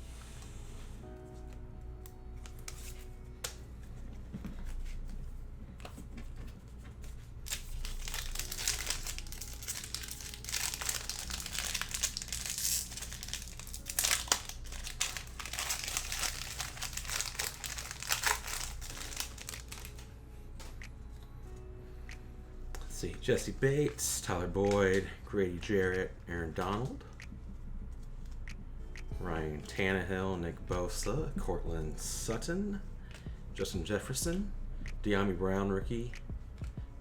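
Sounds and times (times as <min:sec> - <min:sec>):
wrapper crinkling: 0:07.4 - 0:20.1.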